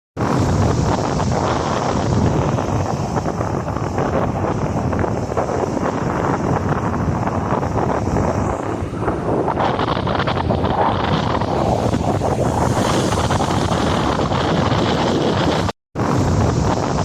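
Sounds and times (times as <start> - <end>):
sea surf breaking: 0.2 - 17.0
wind buffeting microphone: 0.2 - 17.0.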